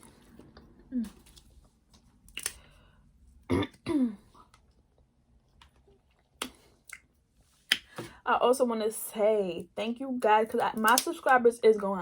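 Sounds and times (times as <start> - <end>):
woman clearing her throat: 3.5 - 4.2.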